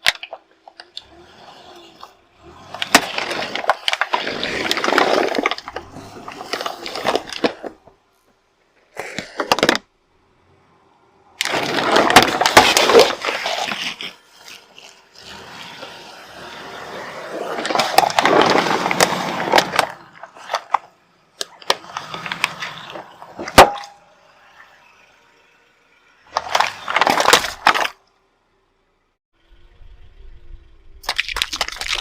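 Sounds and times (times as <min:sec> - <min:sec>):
objects crunching under car tyre: 0:00.0 - 0:09.9, 0:11.4 - 0:24.1, 0:26.3 - 0:28.1, 0:31.0 - 0:32.0.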